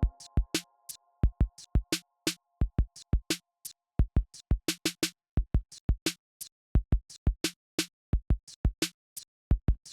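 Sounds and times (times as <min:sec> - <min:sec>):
drum machine beat: 0:00.0 - 0:02.0, 0:02.6 - 0:03.4.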